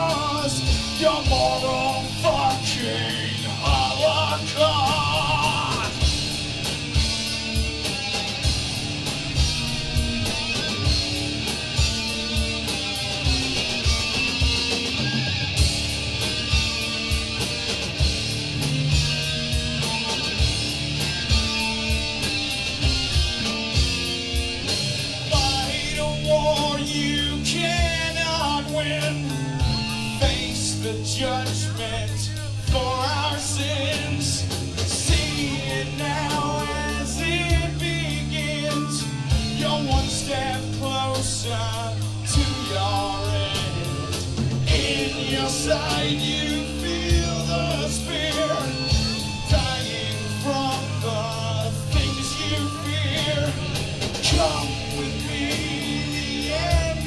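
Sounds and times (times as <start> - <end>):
person singing: 0.0 - 6.1, 25.3 - 57.0
bass guitar: 0.0 - 57.0
distorted electric guitar: 0.0 - 57.0
drum beat: 3.6 - 26.8, 42.3 - 50.6, 51.9 - 57.0.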